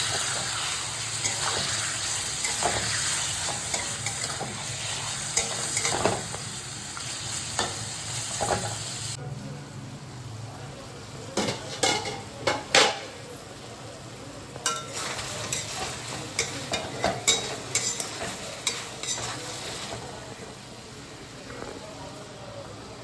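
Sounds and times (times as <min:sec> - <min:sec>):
spatula scraping a pan: 0:00.0 - 0:06.4, 0:14.7 - 0:20.0
chicken sizzling in oil: 0:00.0 - 0:09.2, 0:11.1 - 0:21.4.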